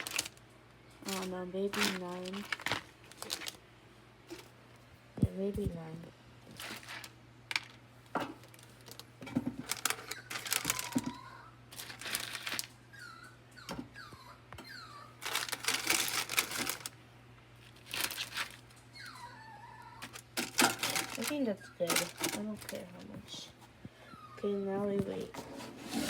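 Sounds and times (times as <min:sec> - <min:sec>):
food packaging crinkling: 0:00.0 - 0:03.6, 0:04.3 - 0:04.5, 0:06.5 - 0:12.8, 0:15.2 - 0:17.0, 0:17.6 - 0:19.2, 0:20.0 - 0:23.4.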